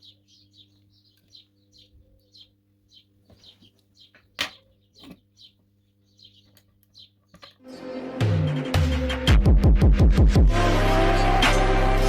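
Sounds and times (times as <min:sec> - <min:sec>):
low electrical hum: 0:00.0 - 0:07.5
small bird chirping: 0:00.0 - 0:07.7.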